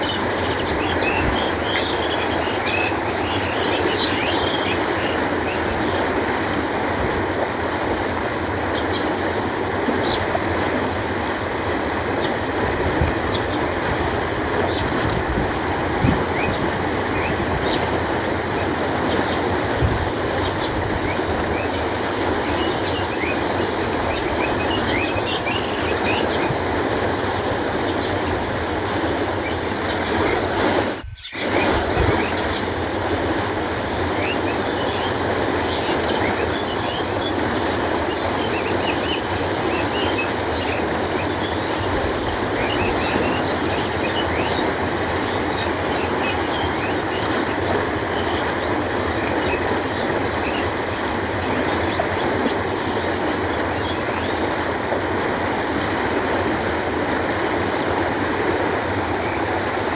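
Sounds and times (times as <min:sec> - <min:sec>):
small birds chirping: 0:00.0 - 0:06.1, 0:15.9 - 0:26.8, 0:29.3 - 0:32.8, 0:34.0 - 0:54.6
water flowing: 0:00.0 - 0:59.9.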